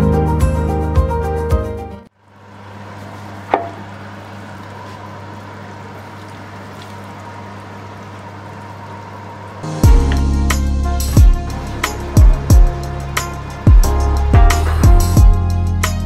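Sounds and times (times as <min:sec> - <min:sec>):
steady kitchen hiss and hum: 0:02.1 - 0:15.8.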